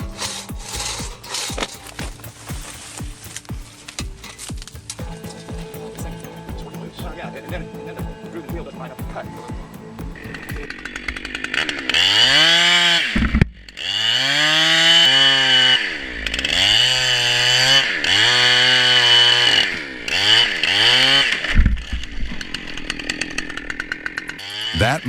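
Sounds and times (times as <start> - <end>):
chainsaw revving: 11.4 - 22.0.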